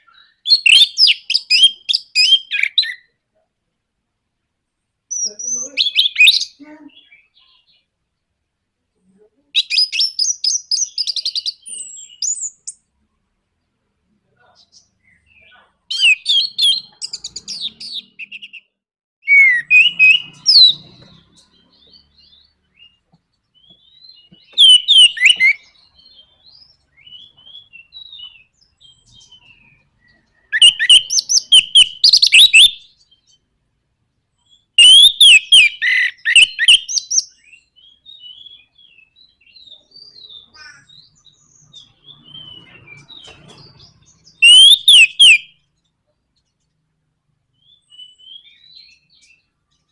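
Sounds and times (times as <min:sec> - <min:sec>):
soft bird twittering: 0:09.6 - 0:12.9, 0:14.3 - 0:33.6, 0:34.4 - 0:46.8, 0:47.5 - 0:49.9.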